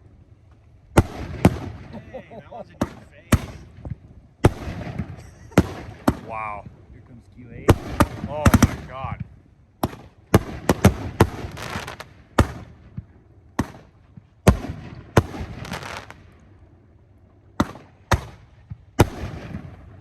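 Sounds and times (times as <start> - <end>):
firework bangs: 0.9 - 6.8, 7.6 - 16.4, 17.5 - 20.0
firework crackle: 9.8 - 12.7, 13.6 - 16.3.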